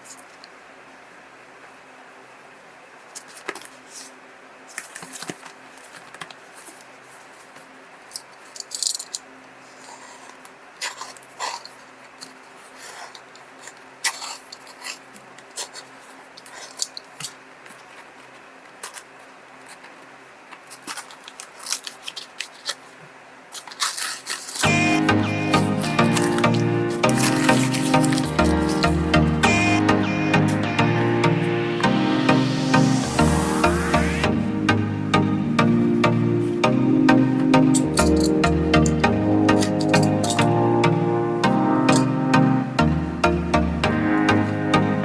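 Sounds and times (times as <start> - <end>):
packaging clicks and rustles: 3.0 - 29.1.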